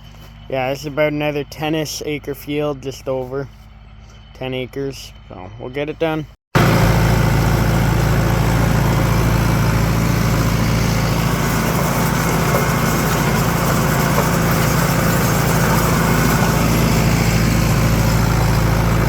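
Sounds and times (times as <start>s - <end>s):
tractor engine droning: 6.6s - 19.0s.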